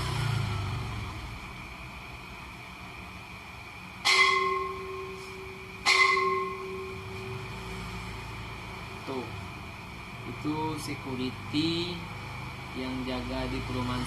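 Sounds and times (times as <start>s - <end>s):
ringing metal strikes: 4.0s - 7.9s.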